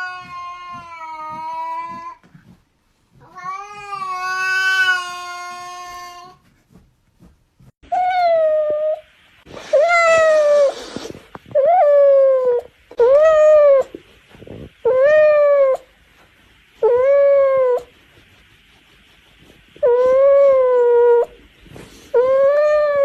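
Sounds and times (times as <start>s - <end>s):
cat yowling: 0.0s - 2.2s, 9.7s - 10.7s, 11.5s - 13.9s, 22.2s - 23.0s.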